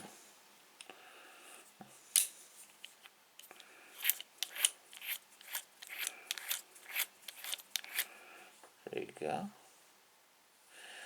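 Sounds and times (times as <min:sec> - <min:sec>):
padlock dial clicks: 0:04.0 - 0:08.1.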